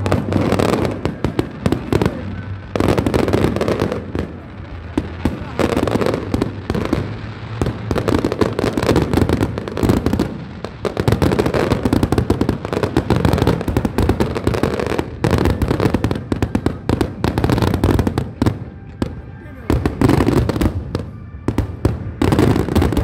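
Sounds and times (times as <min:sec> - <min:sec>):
fireworks bangs and crackles: 0:00.0 - 0:23.0.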